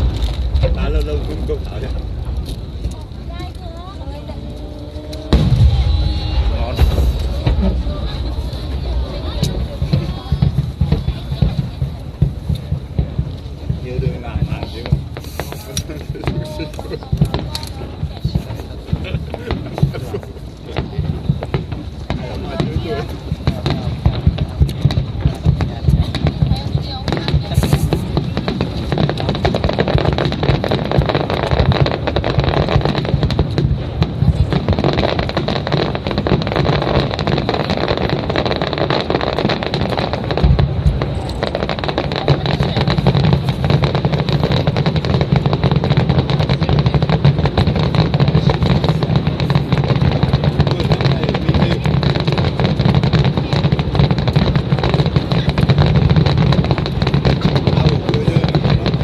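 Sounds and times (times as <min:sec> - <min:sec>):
fireworks bursting: 0:00.0 - 0:59.0.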